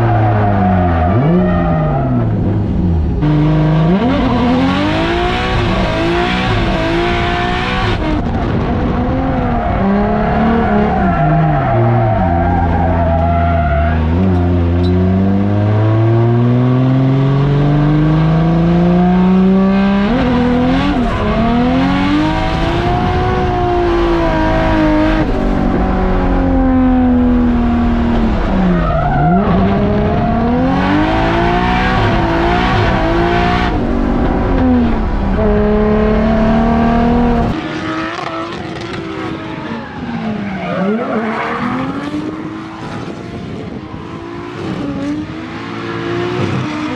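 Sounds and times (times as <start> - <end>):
car engine revving hard: 2.2 - 12.1, 14.0 - 39.6.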